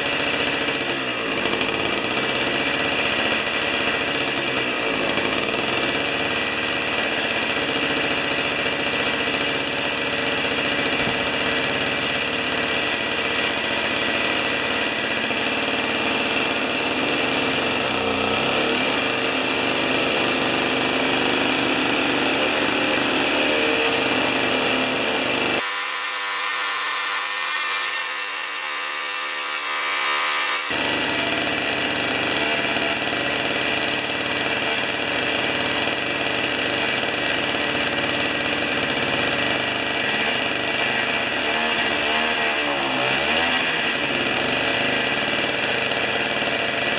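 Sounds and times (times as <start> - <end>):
high hiss: 25.6 - 30.7
two-stroke engine running: 25.6 - 30.7.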